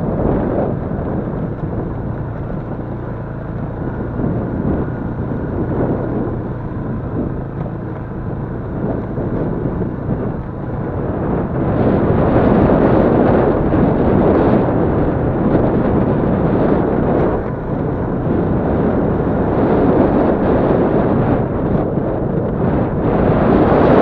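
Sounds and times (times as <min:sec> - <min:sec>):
motorcycle engine running: 0:00.0 - 0:24.0
wind buffeting microphone: 0:00.0 - 0:24.0.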